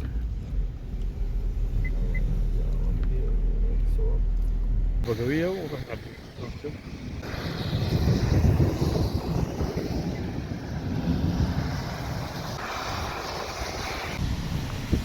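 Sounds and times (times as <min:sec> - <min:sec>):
wind gusting on microphone: 0:05.0 - 0:15.0.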